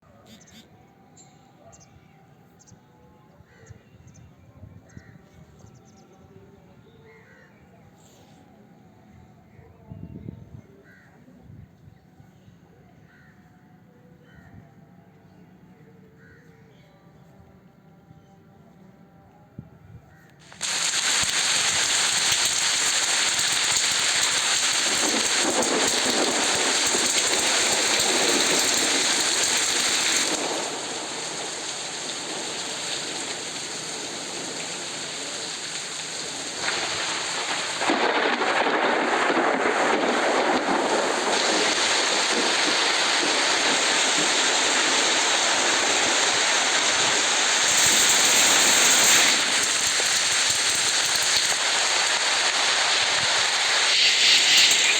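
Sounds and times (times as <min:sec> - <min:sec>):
rain hissing: 0:20.4 - 0:54.9.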